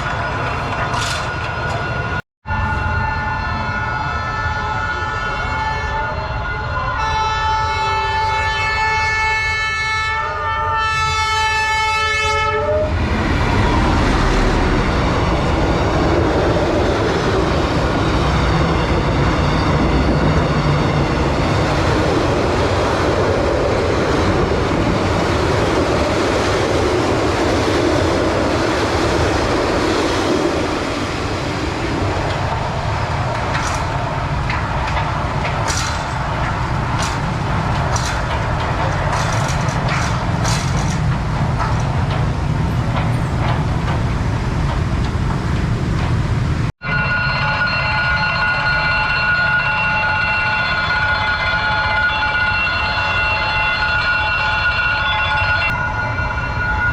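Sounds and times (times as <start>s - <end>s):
train cars rumbling and rattling: 0.0s - 56.9s
train horn blast: 2.5s - 13.0s.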